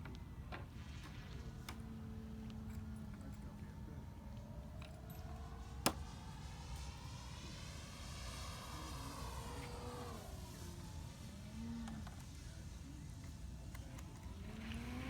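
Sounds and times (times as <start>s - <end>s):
model plane motor whining: 0.0s - 15.0s.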